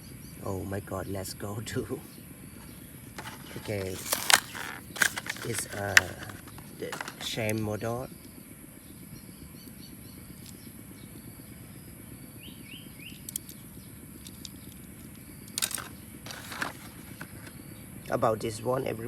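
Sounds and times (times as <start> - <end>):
rustling clicks: 2.6 - 7.6, 13.1 - 13.6, 14.2 - 17.6
faint bird chirps: 7.4 - 16.2.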